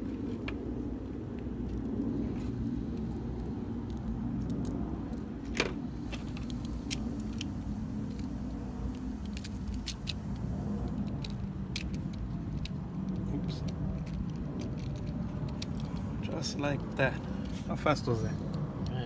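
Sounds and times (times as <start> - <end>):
low background rumble: 0.0 - 19.0
small parts clicking: 2.9 - 17.6.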